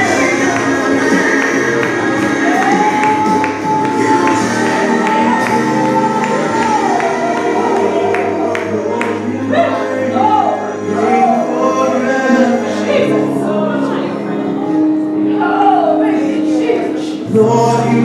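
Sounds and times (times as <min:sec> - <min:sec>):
drums keeping beat: 0:00.0 - 0:08.7
gospel choir singing: 0:00.0 - 0:18.0.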